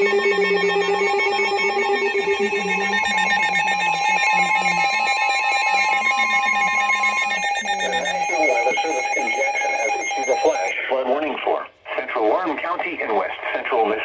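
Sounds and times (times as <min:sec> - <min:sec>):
electronic alert tone: 0:00.0 - 0:10.7.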